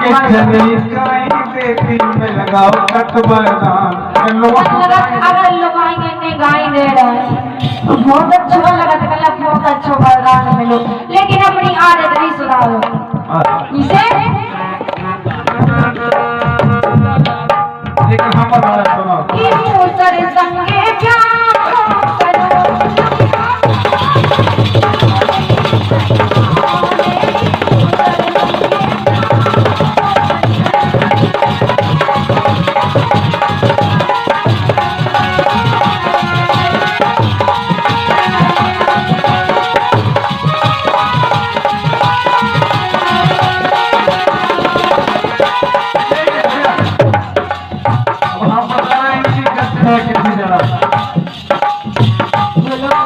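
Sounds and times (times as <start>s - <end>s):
hand drum beat: 0.0s - 53.0s
folk music melody: 22.4s - 48.1s.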